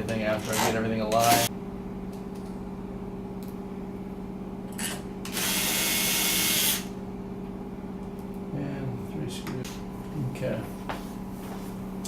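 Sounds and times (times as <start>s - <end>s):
power drill driving screw: 0.5s - 1.5s, 5.3s - 6.9s.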